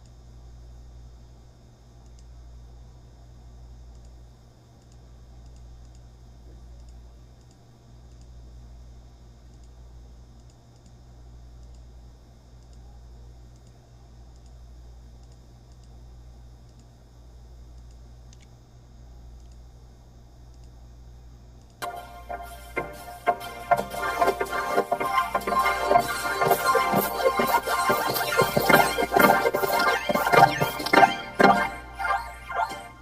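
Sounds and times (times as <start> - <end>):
low electrical hum: 0.0 - 33.0
computer keyboard typing: 21.8 - 33.0.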